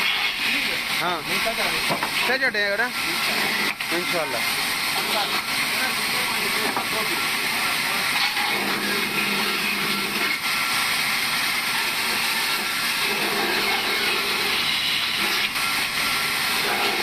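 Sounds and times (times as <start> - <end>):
sawmill saw running: 0.0 - 17.0.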